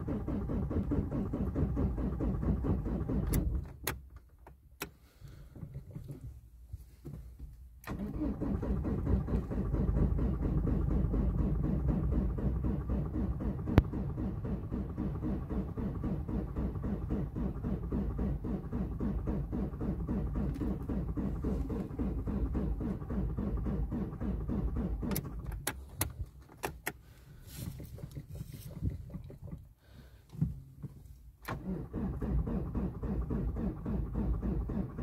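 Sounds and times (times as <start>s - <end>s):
engine running: 7.9s - 26.1s.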